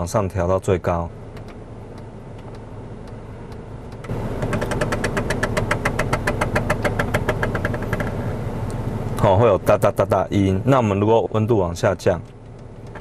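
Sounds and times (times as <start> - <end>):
steady low hum: 0.0 - 13.0
rapid clicking from air vent: 1.3 - 8.2, 12.2 - 13.0.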